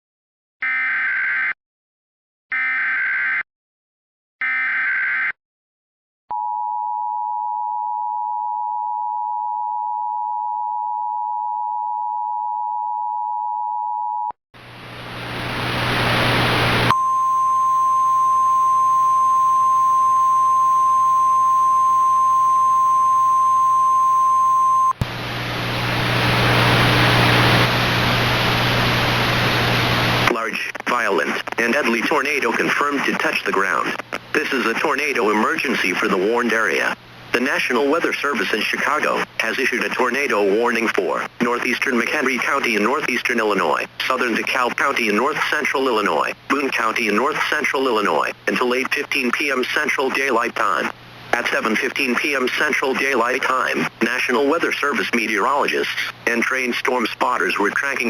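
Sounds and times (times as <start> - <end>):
loud hissing static: 14.6 - 16.9, 25.0 - 37.8
steady warning tone: 15.3 - 25.0
two-tone attention signal: 16.9 - 25.0.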